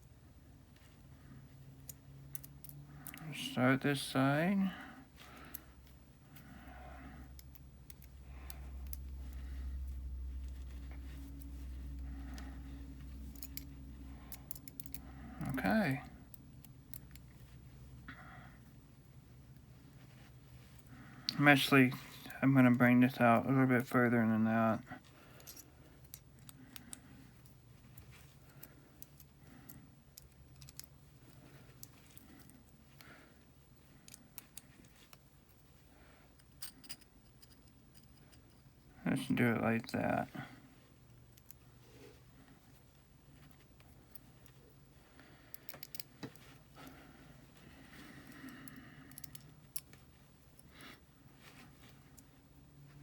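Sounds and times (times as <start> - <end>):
steady low hum: 0.0 - 53.0
small metal parts clicking: 1.8 - 3.3, 7.3 - 9.5, 13.2 - 15.6, 16.3 - 17.4, 25.3 - 32.8, 34.0 - 35.6, 36.3 - 38.7, 45.5 - 46.4, 48.2 - 50.7.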